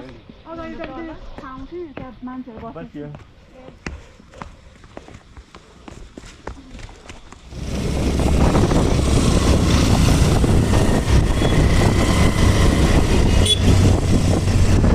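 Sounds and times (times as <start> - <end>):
wind buffeting microphone: 7.5 - 14.9.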